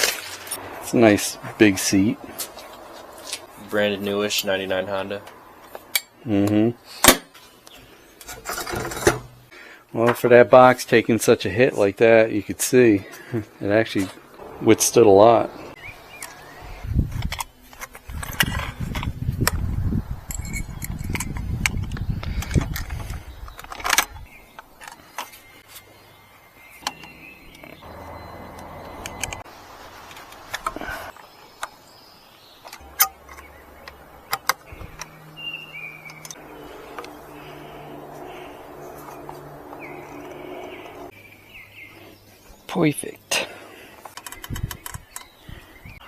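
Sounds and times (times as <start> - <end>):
low rumbling handling noise: 14.1 - 24.8, 26.6 - 41.1
metal tools clinking and rattling: 20.3 - 21.8
sharp clicks: 28.5 - 30.9, 32.6 - 35.2.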